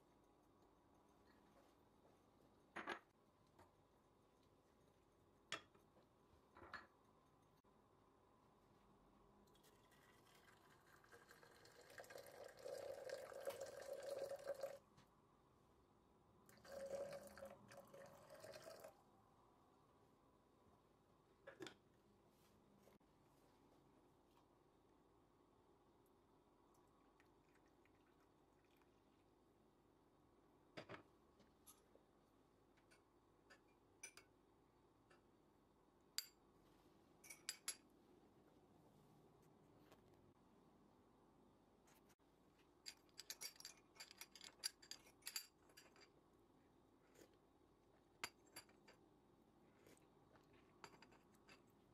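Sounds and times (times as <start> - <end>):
liquid pouring into container: 9.5 - 14.8, 16.5 - 19.0
utensils and glassware clinking: 42.9 - 46.1.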